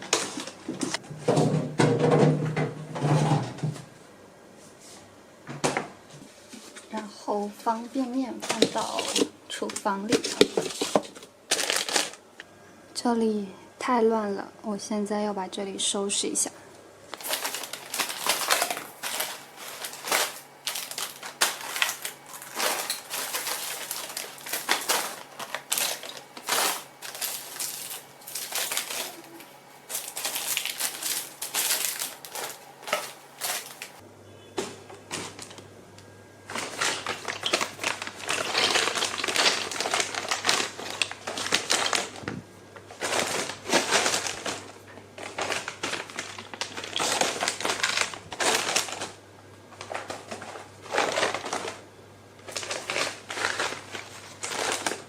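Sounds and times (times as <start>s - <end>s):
packaging rustling: 10.1s - 12.2s, 17.2s - 34.0s, 36.5s - 49.2s, 49.8s - 51.8s, 52.4s - 55.0s
items knocking and clacking: 17.2s - 34.0s.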